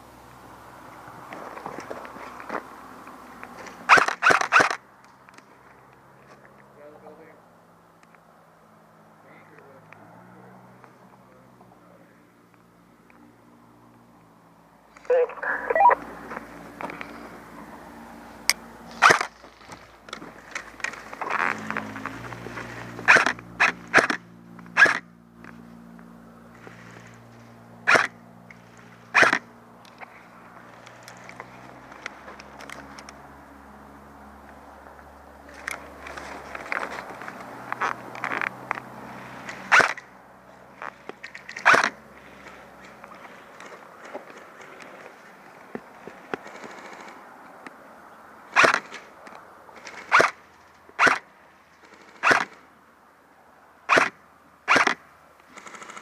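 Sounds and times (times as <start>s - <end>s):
airsoft gun shots: 53.9s - 55.0s
airsoft gun full-auto bursts: 54.7s - 56.0s.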